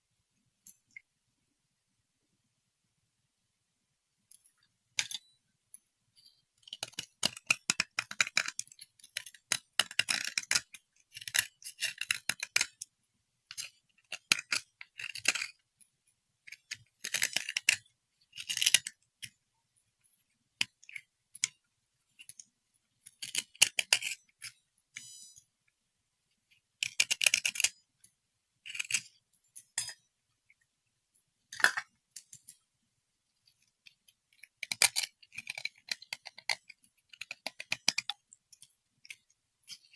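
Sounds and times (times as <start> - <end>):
small hard objects clicking: 33.5 - 39.9.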